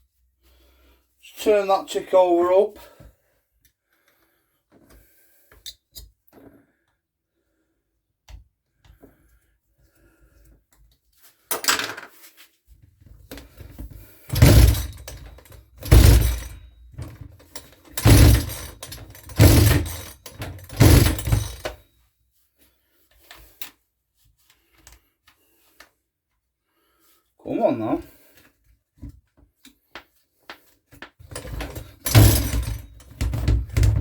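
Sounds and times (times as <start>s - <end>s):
recoil starter pulls: 14.3s - 16.6s, 17.9s - 21.7s, 31.3s - 34.0s.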